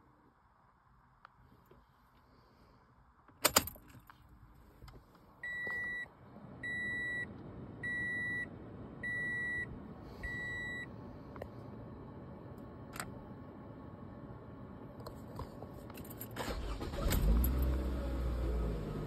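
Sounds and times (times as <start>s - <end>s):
dashboard warning chime beeps: 5.4s - 10.9s.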